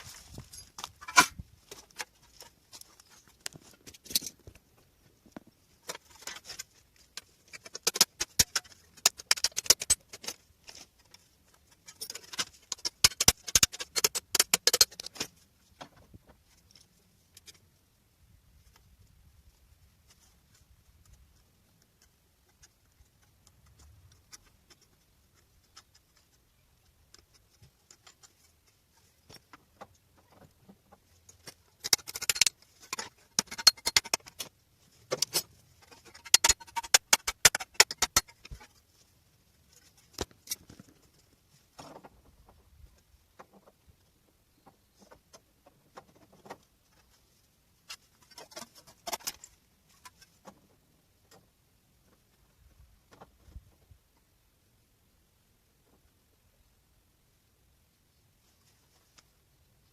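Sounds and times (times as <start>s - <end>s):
hand tools on sheet metal: 5.9s - 15.3s, 31.3s - 34.5s, 35.1s - 38.8s.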